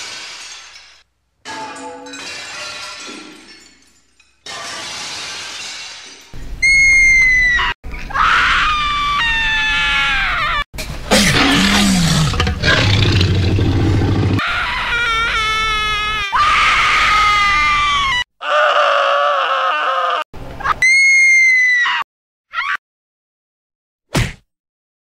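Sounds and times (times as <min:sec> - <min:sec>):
screaming sound effects: 0:14.4 - 0:22.8.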